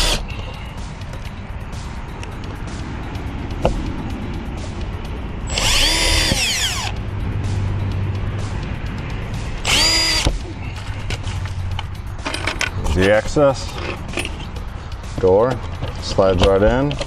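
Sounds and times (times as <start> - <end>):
power drill driving screws: 0.0 - 0.2, 5.5 - 6.9, 9.6 - 10.3.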